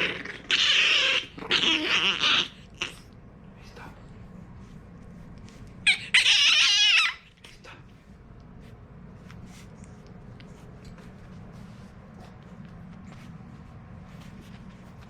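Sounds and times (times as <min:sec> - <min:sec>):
puppy yipping: 0:00.0 - 0:03.1, 0:05.8 - 0:07.4
puppy whining: 0:00.0 - 0:03.2, 0:05.7 - 0:07.5.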